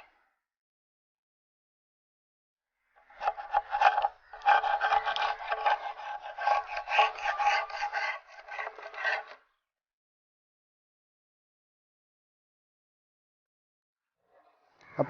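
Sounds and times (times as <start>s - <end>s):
screwdriver scraping cement: 3.2s - 9.4s.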